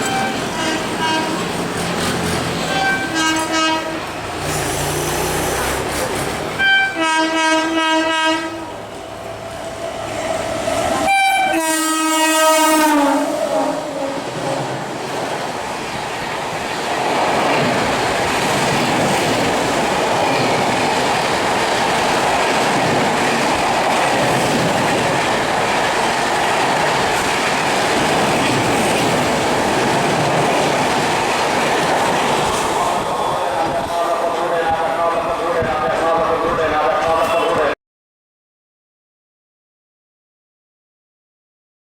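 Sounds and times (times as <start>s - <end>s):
train horn blasts: 0.0s - 1.4s, 2.7s - 4.1s, 6.6s - 8.7s, 10.9s - 14.2s
train wheels rumbling over rail joints: 0.0s - 6.6s, 8.8s - 37.3s.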